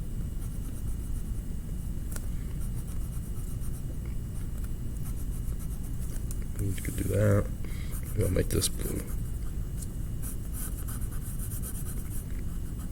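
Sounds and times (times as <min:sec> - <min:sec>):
low steady hum: 0:00.0 - 0:12.9
coloring tool scratching on paper: 0:10.2 - 0:12.9.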